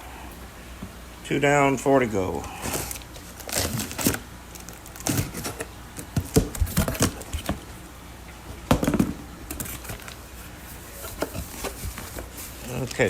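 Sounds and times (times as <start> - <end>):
plastic bags rustling: 2.3 - 7.9, 8.5 - 13.0
box being moved and opened: 10.9 - 13.0.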